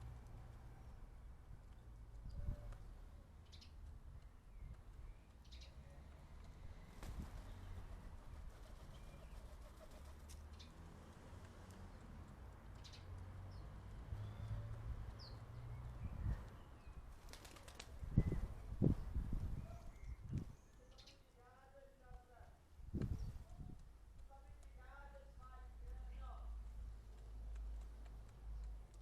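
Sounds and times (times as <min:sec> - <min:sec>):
pigeon wings flapping: 0:06.9 - 0:10.4, 0:17.1 - 0:18.0
distant birds chirping: 0:12.7 - 0:22.2.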